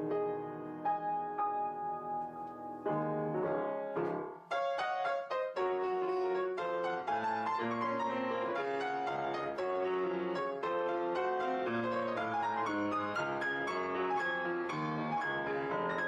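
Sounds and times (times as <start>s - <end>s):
piano music: 0.0s - 16.0s.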